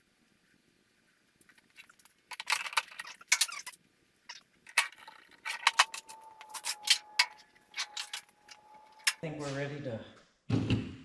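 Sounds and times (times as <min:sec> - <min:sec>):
metal parts clinking and rattling: 0:01.5 - 0:09.2
faint steady high tone: 0:05.0 - 0:09.4.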